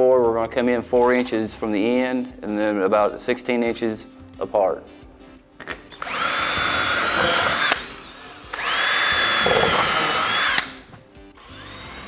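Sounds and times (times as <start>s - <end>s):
power drill whining: 5.9s - 12.0s.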